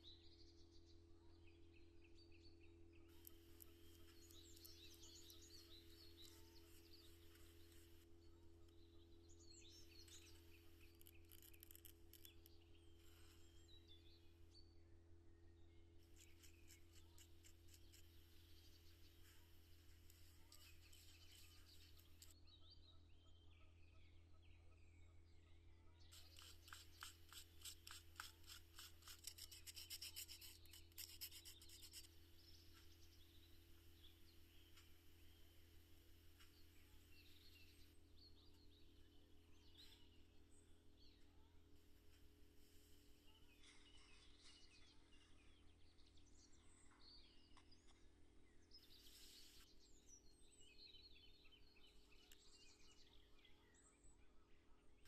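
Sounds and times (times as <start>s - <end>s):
faint bird chirps: 0.0s - 55.0s
quick rubbing strokes: 16.1s - 22.3s, 26.1s - 32.2s.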